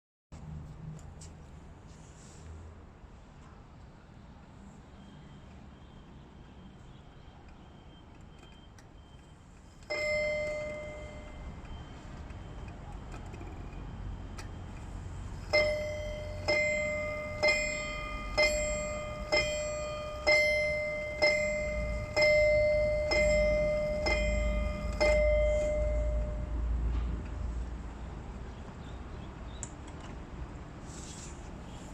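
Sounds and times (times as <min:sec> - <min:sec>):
wall clock chime strikes: 0:09.9 - 0:11.5, 0:15.5 - 0:26.6.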